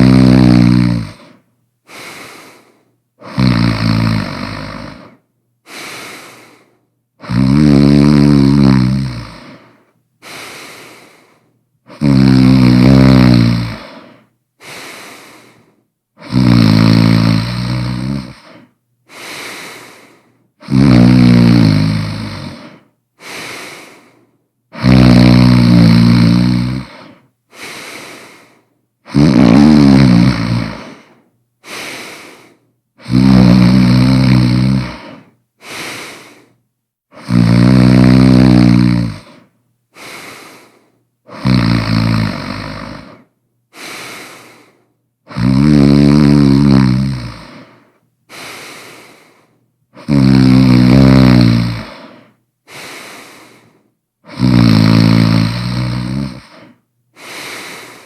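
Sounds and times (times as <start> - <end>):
quiet breath sound: 0.0 - 3.4, 4.2 - 45.9, 46.5 - 58.0
person snoring loudly: 0.0 - 6.6, 7.2 - 11.2, 11.9 - 15.6, 16.2 - 36.5, 37.1 - 58.0.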